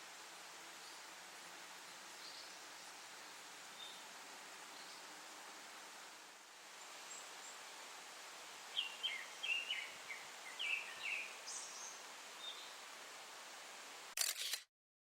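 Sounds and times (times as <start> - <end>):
steady background hiss: 0.0 - 14.3
songbird singing sharp notes: 8.7 - 12.7.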